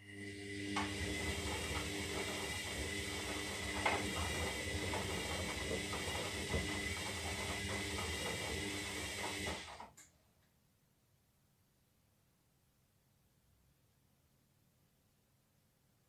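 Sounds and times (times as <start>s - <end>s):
washing machine motor whine: 0.0s - 9.9s.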